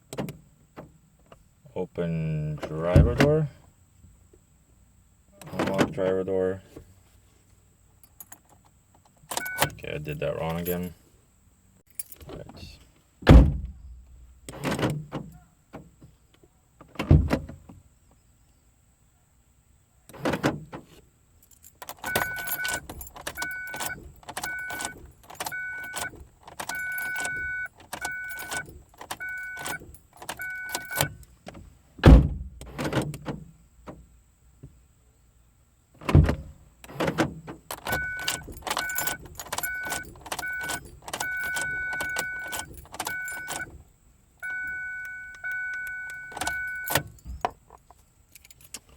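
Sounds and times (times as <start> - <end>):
car doors thudding shut: 2.9 - 3.4, 13.2 - 15.9, 16.9 - 17.7, 32.0 - 34.0, 36.0 - 43.8
keys jangling: 9.3 - 11.0, 21.4 - 31.4, 37.7 - 43.7, 44.6 - 48.9
car warning chime beeping: 9.4 - 9.8, 22.1 - 31.2, 37.8 - 43.7, 44.4 - 47.2.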